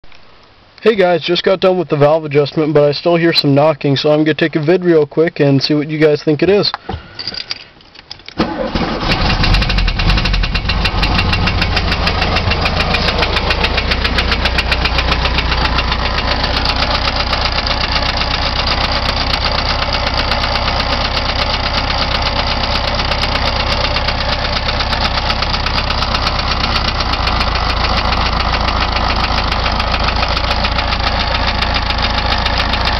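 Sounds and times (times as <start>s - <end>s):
car engine idling: 8.4s - 32.9s
rapid regular engine knocking: 9.0s - 32.9s.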